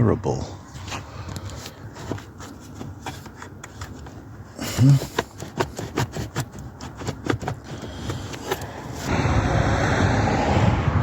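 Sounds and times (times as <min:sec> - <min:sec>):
steady low rumbling: 0:09.0 - 0:11.0.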